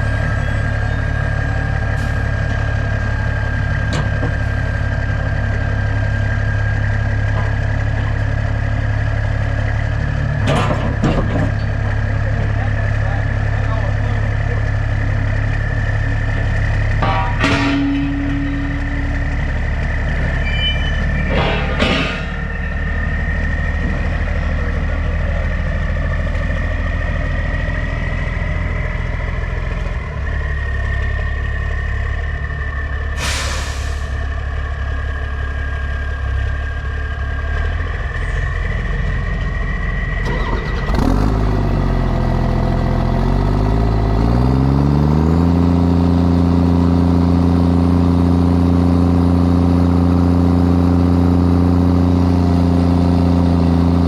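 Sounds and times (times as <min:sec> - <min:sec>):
diesel truck engine running: 0:00.0 - 0:54.0
air hissing: 0:33.2 - 0:34.2.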